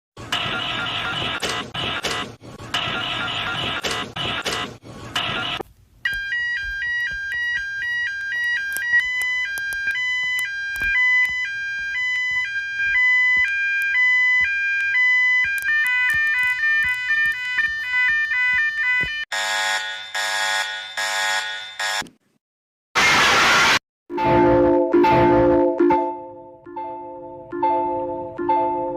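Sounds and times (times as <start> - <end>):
electronic alarm beeps: 5.3 - 19.2.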